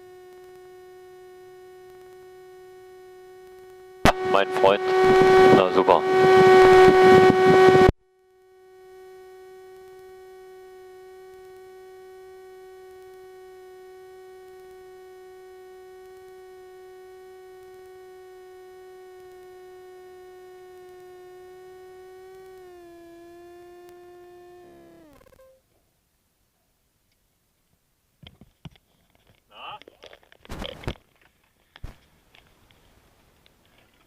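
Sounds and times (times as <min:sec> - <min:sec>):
steady humming tone: 0:00.0 - 0:26.2.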